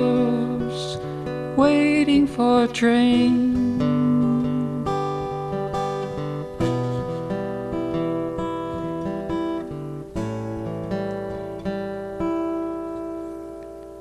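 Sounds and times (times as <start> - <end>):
person singing: 0.0 - 5.5
acoustic guitar strumming: 0.0 - 14.0.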